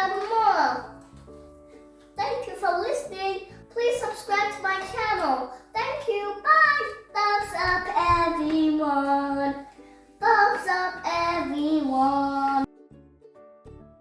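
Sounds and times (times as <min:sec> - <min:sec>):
child singing: 0:00.0 - 0:00.9, 0:02.2 - 0:12.7.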